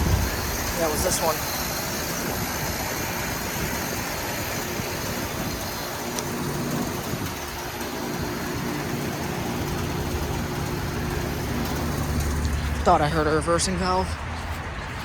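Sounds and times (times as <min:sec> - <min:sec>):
heat pump compressor hum: 0:00.0 - 0:15.0.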